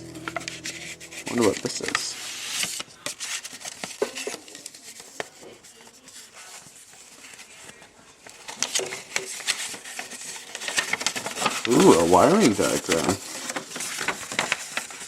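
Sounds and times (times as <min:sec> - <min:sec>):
paper rustling: 0:02.5 - 0:15.0.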